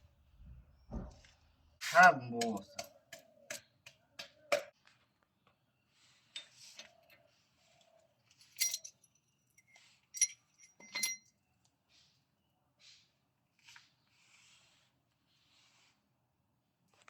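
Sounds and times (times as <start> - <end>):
metal parts handling and scraping: 8.3 - 11.2.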